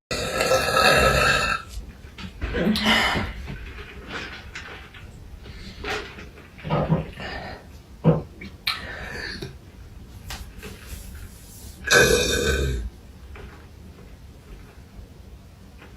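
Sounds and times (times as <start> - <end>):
woman burping: 0.1 - 1.7, 11.9 - 12.9.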